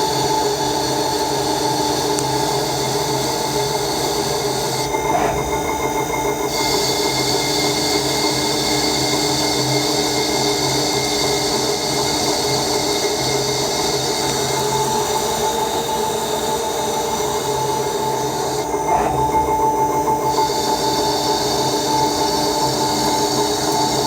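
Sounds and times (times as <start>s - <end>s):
spindle whine: 4.7s - 7.7s, 17.6s - 21.6s
machining noise: 5.0s - 6.8s, 18.9s - 20.4s.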